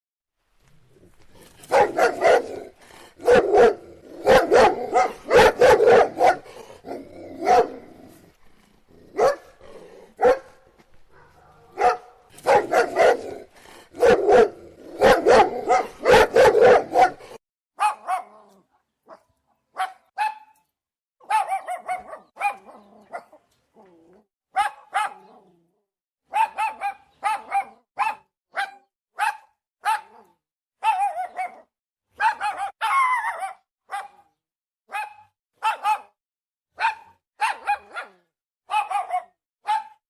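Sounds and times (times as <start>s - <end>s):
puppies barking: 1.7s - 2.6s, 3.2s - 7.8s, 9.2s - 9.6s, 10.2s - 13.4s, 14.0s - 18.3s, 21.2s - 23.4s, 24.6s - 25.3s, 26.3s - 30.2s, 32.2s - 34.2s, 34.9s - 36.1s, 36.8s - 40.0s.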